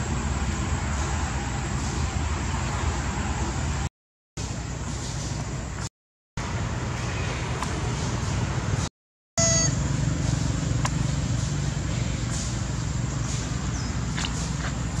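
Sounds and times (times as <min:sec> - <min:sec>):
high-pitched squeal: 0:09.4 - 0:10.0.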